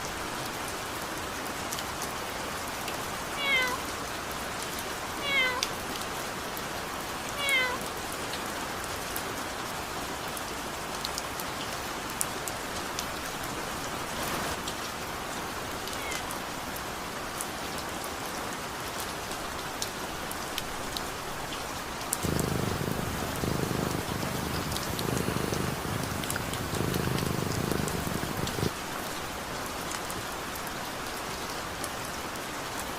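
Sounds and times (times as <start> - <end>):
steady rain: 0.0 - 32.9
cat meowing: 3.4 - 3.9, 5.2 - 5.7, 7.4 - 7.8, 15.9 - 16.3, 22.2 - 28.7.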